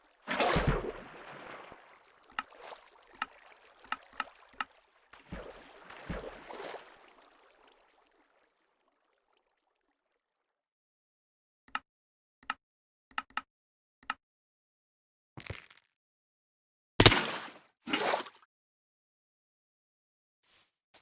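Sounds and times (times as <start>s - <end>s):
water splashing: 0.0s - 8.5s
water drops plinking: 2.4s - 4.7s.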